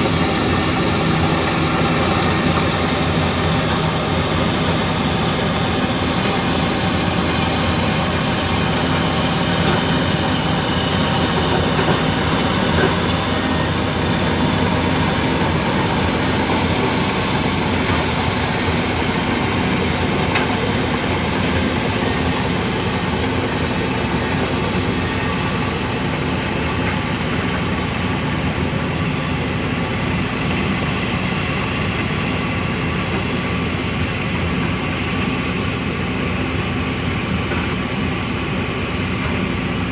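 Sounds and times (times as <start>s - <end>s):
bulldozer diesel engine running: 0.0s - 39.9s
steel tracks clattering: 0.0s - 39.9s.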